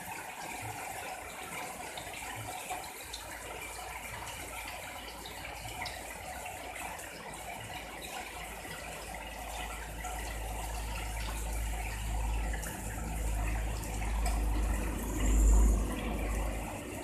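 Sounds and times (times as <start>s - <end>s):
heavy rain pouring: 8.8s - 17.0s.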